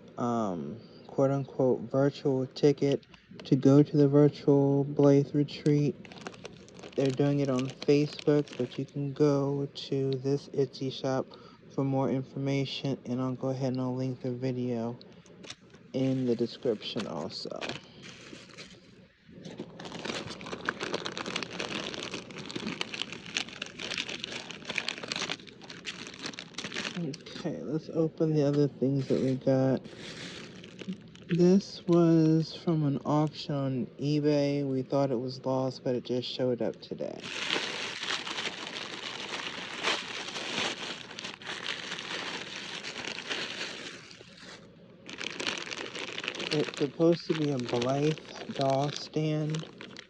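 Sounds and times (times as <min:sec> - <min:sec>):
packaging crinkling: 0:05.5 - 0:10.5, 0:15.2 - 0:27.4, 0:28.4 - 0:31.7, 0:37.2 - 0:50.0.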